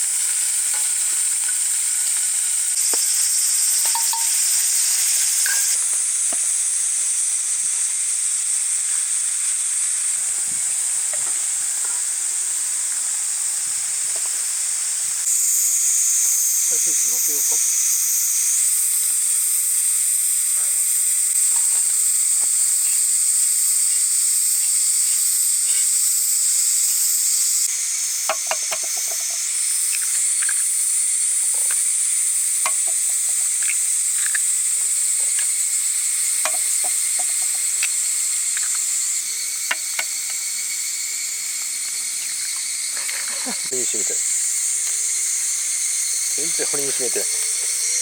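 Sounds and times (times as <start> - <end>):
vegetables sizzling in a pan: 0.0 - 48.0
utensil stirring clicks: 2.9 - 5.8, 28.3 - 32.0, 32.6 - 38.9.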